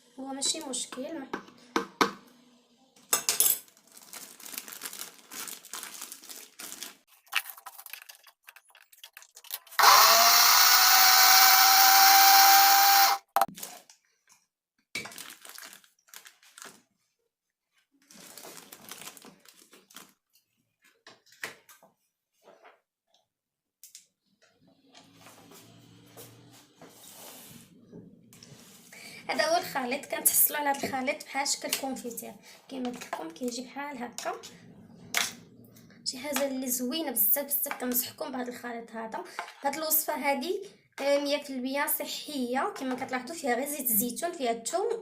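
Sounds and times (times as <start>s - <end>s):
electric chopper motor grinding: 9.8s - 13.4s.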